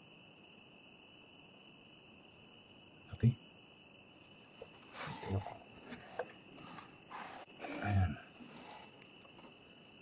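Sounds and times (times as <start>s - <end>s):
crickets trilling: 0.0s - 10.0s
rustling and knocks: 4.6s - 7.8s.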